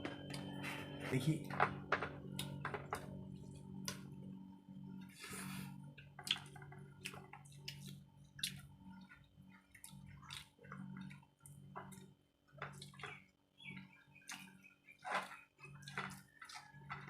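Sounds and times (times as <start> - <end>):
people chewing and lip-smacking: 5.0 - 17.0.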